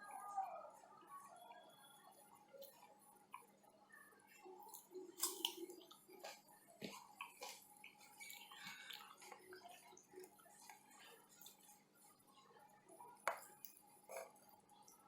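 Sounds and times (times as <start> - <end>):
person chewing food: 4.6 - 11.9.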